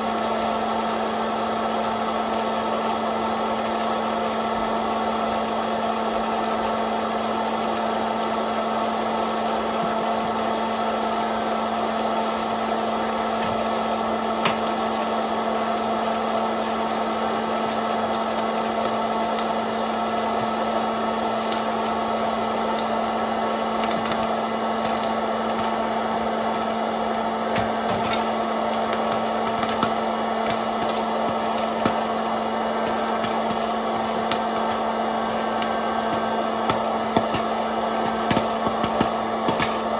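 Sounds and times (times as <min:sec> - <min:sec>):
popcorn maker motor humming: 0:00.0 - 0:39.9
popcorn kernels popping: 0:12.6 - 0:39.9.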